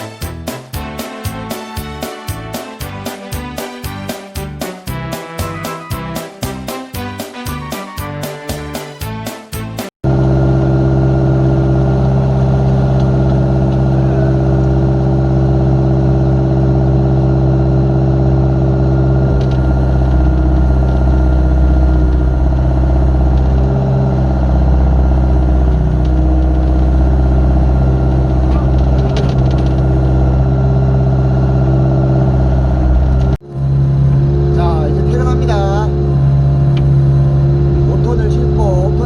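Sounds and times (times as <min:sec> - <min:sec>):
excavator diesel engine running: 0:09.8 - 0:39.0.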